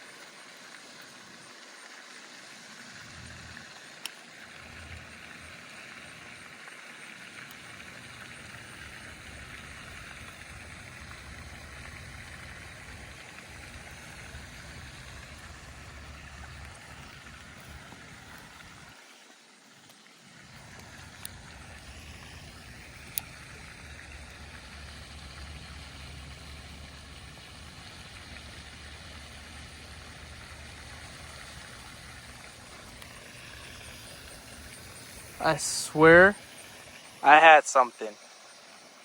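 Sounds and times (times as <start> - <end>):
faint steady hiss: 0.0 - 39.0.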